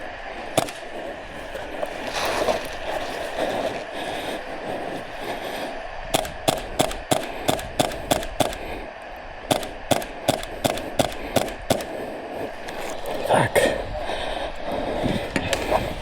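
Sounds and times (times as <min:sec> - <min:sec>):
quick footsteps: 0:00.6 - 0:04.4.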